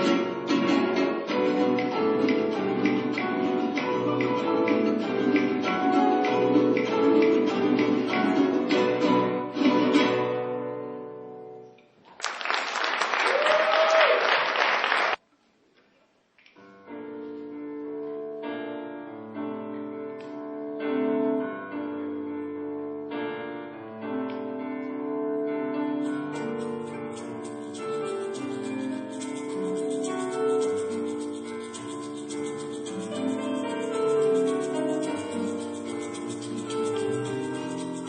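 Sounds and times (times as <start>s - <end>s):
latin band music: 0.0s - 10.3s, 26.0s - 38.0s
plucked guitar and piano instrumental: 0.0s - 11.8s, 17.0s - 38.0s.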